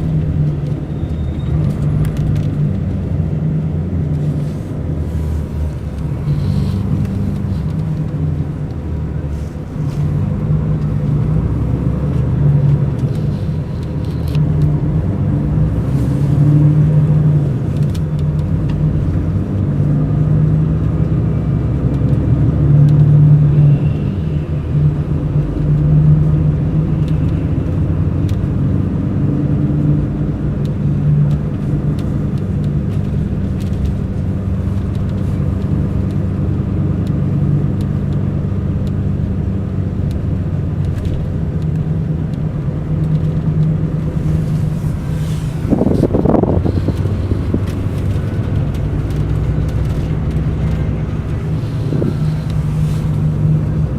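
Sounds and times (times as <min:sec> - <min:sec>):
coach diesel engine running: 0:00.0 - 0:53.9.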